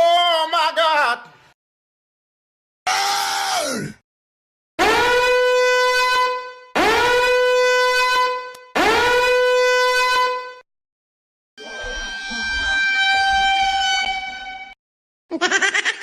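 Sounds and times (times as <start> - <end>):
buzzy horn blasts: 4.8 - 10.7, 11.6 - 14.8.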